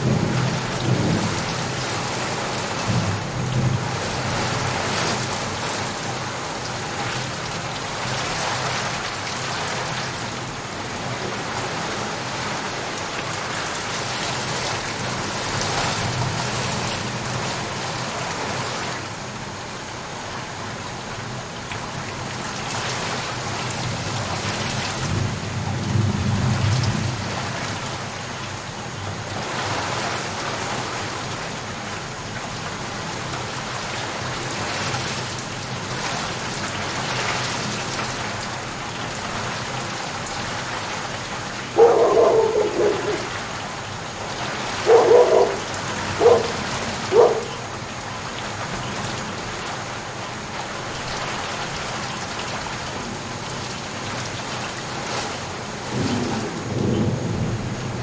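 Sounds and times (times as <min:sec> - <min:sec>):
rain pattering on surfaces: 0:00.0 - 0:58.0
thunder rumbling: 0:41.7 - 0:47.8, 0:55.8 - 0:58.0.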